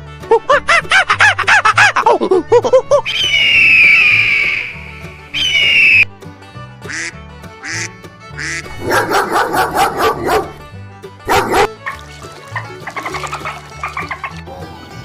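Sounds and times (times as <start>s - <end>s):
background music with bass line: 0.0s - 15.0s
duck quacking: 6.9s - 10.5s, 11.3s - 14.4s.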